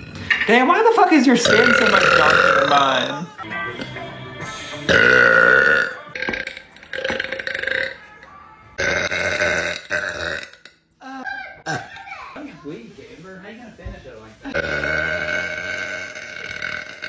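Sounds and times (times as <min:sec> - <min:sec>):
woman belching: 0:01.4 - 0:03.3, 0:04.9 - 0:08.0, 0:08.8 - 0:11.9, 0:14.5 - 0:17.0.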